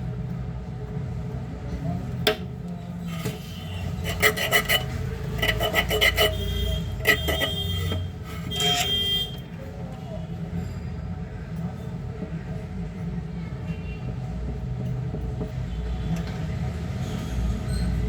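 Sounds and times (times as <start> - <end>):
scraping and clicking hand work: 2.2 - 9.5.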